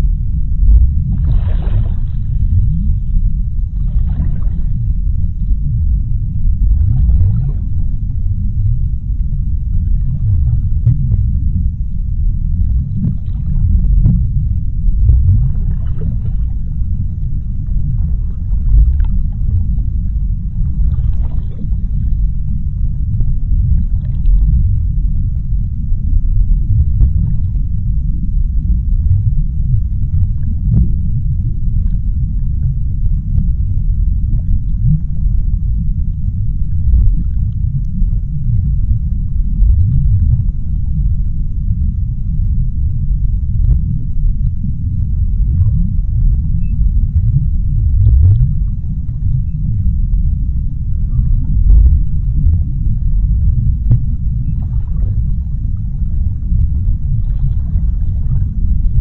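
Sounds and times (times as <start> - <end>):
deep underwater rumble: 0.0 - 59.0
faint underwater crackles: 0.0 - 59.0.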